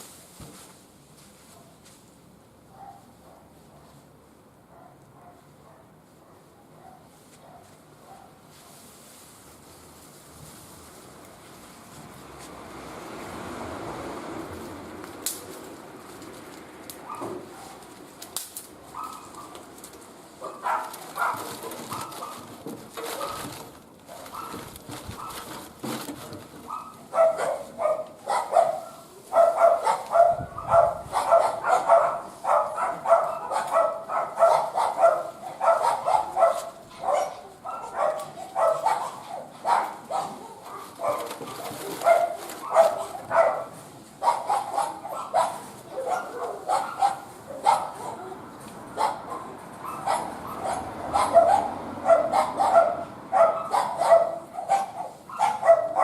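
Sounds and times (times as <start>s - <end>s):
dog barking: 2.7s - 3.9s, 4.7s - 8.4s, 17.0s - 17.8s, 18.9s - 19.6s, 20.4s - 22.4s, 24.1s - 24.6s, 26.7s - 48.4s, 49.0s - 56.0s
wood fire crackling: 15.0s - 22.4s.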